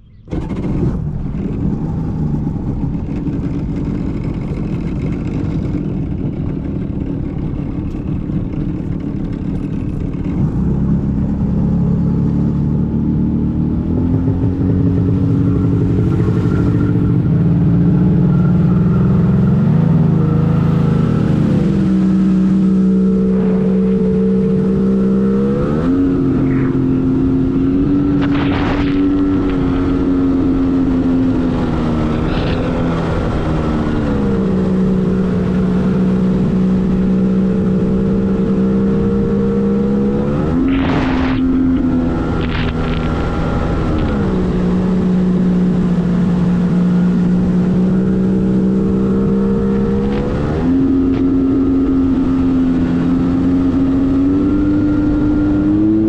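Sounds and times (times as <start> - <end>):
personal watercraft engine running: 0.0 - 56.0
short rushes of noise: 25.6 - 30.1, 40.5 - 43.2.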